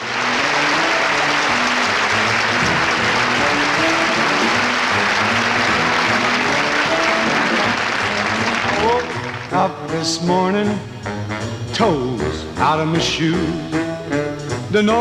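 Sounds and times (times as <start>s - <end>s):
audience applauding: 0.0s - 9.8s
band playing: 0.0s - 15.0s.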